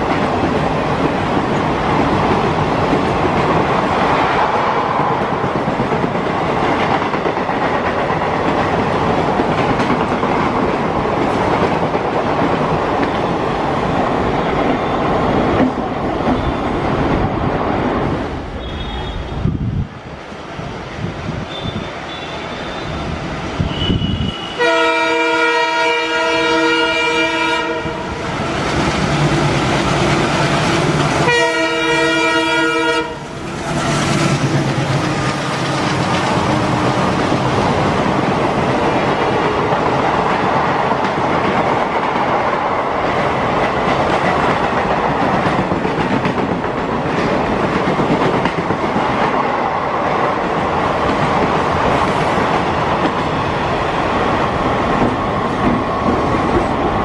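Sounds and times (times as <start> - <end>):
train wheels clattering on rails: 0.0 - 18.5, 21.5 - 57.0
locomotive horn blasts: 23.7 - 28.2, 31.2 - 33.2.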